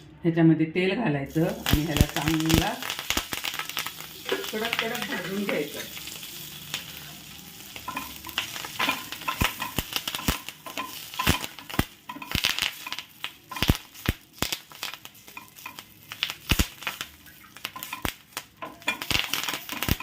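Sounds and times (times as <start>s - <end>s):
leaves crackling in hot oil: 1.3s - 20.0s
spatula stirring against pan: 1.5s - 20.0s.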